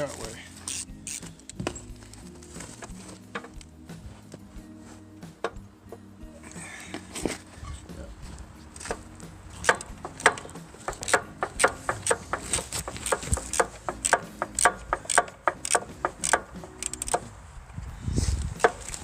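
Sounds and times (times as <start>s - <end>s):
wrench clicking on metal fitting: 0.7s - 1.6s, 9.6s - 17.2s.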